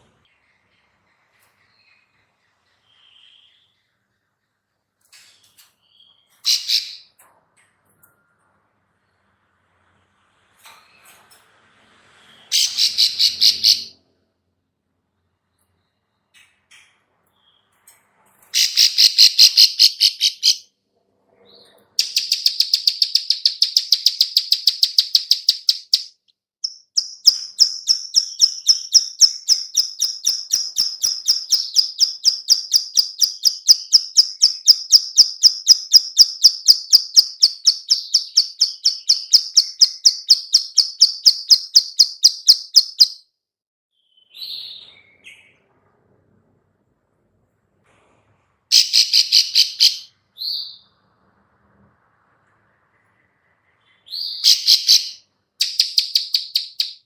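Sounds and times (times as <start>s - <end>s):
bird clicking call: 22.0s - 43.2s, 54.4s - 57.0s.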